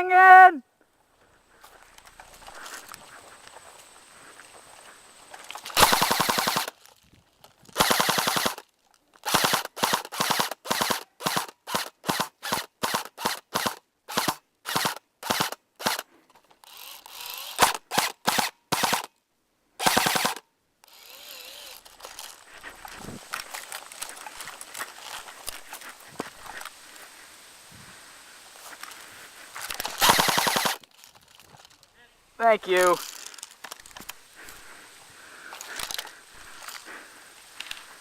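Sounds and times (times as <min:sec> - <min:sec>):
airsoft gun firing bursts: 0:05.8 - 0:06.8, 0:07.8 - 0:08.6, 0:09.2 - 0:16.0, 0:17.5 - 0:19.1, 0:19.8 - 0:20.4, 0:29.9 - 0:30.8.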